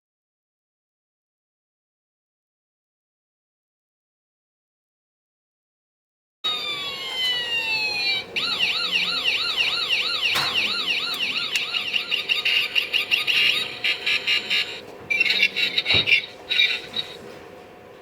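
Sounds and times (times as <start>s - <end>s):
toy siren warbling: 6.5s - 17.2s.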